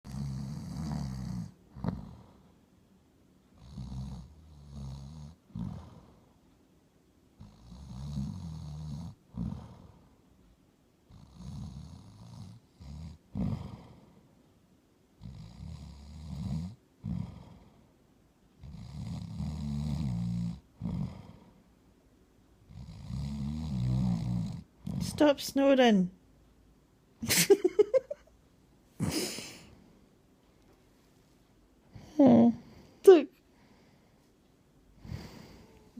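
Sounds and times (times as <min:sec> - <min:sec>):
person snoring: 0:00.1 - 0:02.4, 0:03.6 - 0:06.2, 0:07.4 - 0:10.0, 0:11.1 - 0:14.0, 0:15.2 - 0:17.8, 0:18.6 - 0:21.6, 0:22.7 - 0:25.2.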